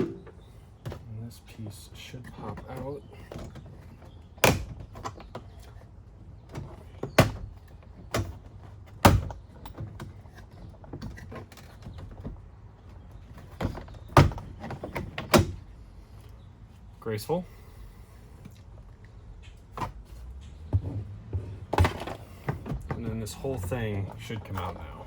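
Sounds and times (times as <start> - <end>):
plastic trim cracking and knocking: 2.3 - 5.8, 6.4 - 15.6, 19.7 - 25.0.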